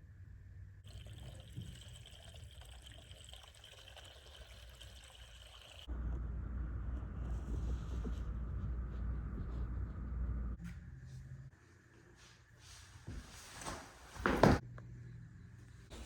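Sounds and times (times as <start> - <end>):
water trickling from faucet: 0.9 - 5.9
low rumble: 5.9 - 11.5.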